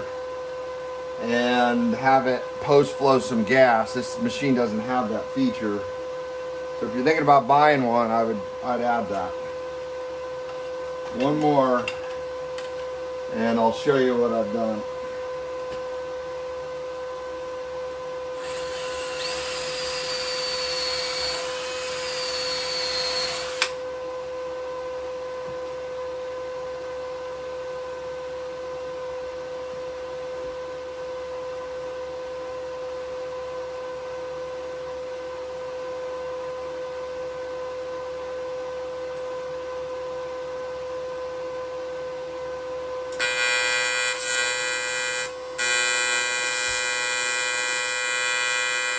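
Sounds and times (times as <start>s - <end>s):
welder electrical whine: 1.2s - 26.0s, 43.1s - 48.9s
welding arc buzzing: 18.4s - 23.8s, 43.2s - 48.9s.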